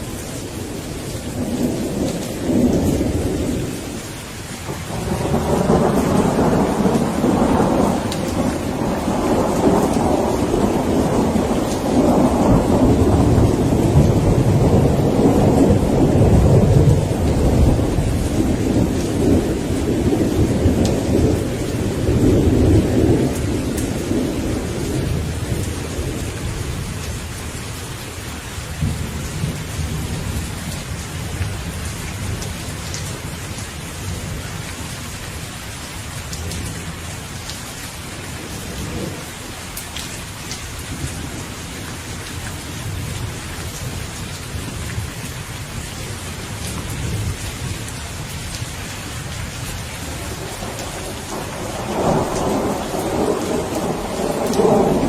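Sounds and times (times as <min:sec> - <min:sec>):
steady rain falling: 0:00.0 - 0:55.0
low roll of thunder: 0:04.7 - 0:27.9, 0:28.8 - 0:35.0, 0:38.3 - 0:39.5, 0:40.8 - 0:55.0.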